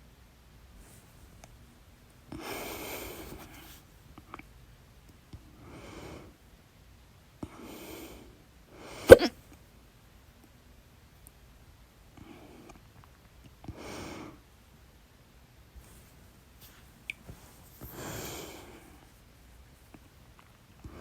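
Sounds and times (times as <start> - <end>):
loud sharp hiccup: 9.1 - 9.3
person breathing: 17.8 - 19.1.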